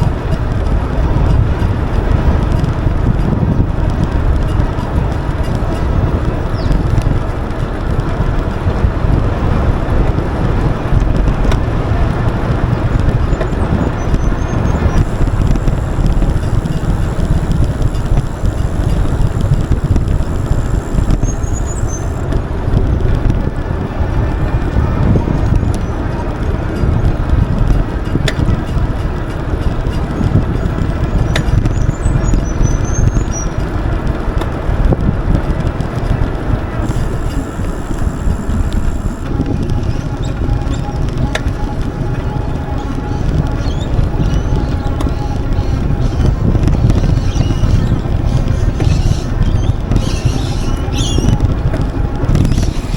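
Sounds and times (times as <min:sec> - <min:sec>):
bike rolling noise: 0:00.0 - 0:52.9
wind buffeting microphone: 0:00.0 - 0:52.9.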